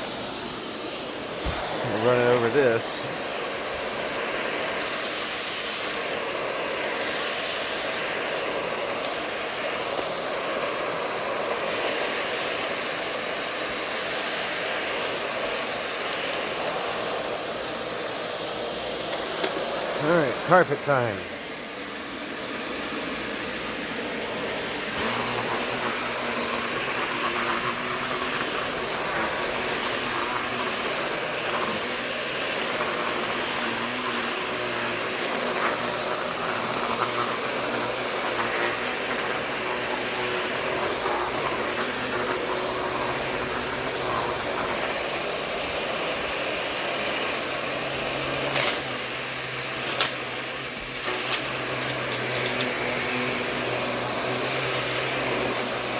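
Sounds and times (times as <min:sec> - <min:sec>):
vacuum cleaner on carpet: 0:00.0 - 0:55.9.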